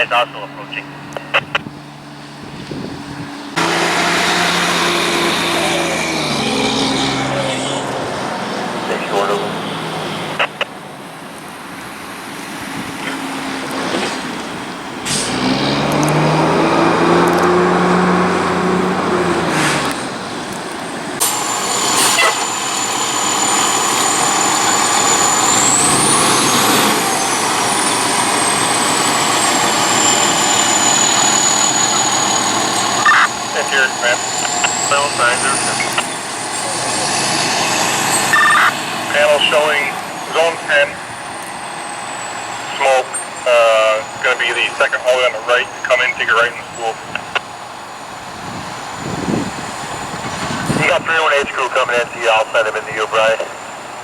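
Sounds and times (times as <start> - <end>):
fire truck diesel engine: 0.0 - 54.0
thin high whine: 21.2 - 53.8.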